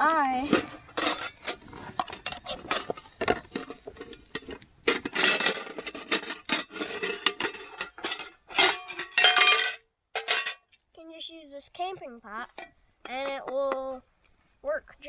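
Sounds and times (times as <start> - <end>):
metal pot scraping and clicking: 0.4 - 10.6.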